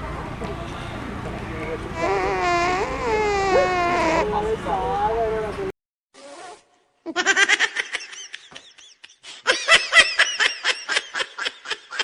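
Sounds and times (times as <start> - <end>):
high-pitched laughter: 7.1 - 12.0.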